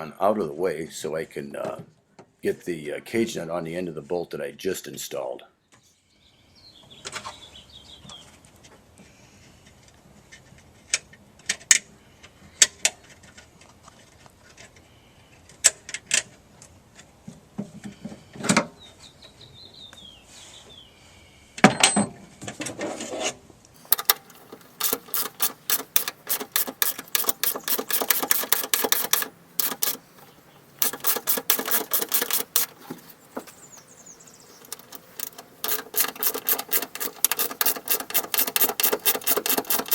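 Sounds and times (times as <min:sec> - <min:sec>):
rapid even clicking: 0:23.8 - 0:33.9, 0:34.6 - 0:39.9
tools clicking on metal: 0:23.8 - 0:33.9, 0:34.6 - 0:39.9.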